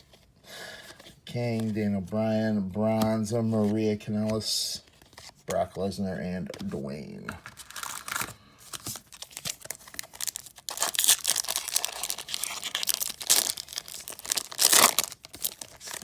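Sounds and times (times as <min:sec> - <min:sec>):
foil wrapper tearing and crinkling: 0:07.6 - 0:08.3, 0:09.0 - 0:16.0.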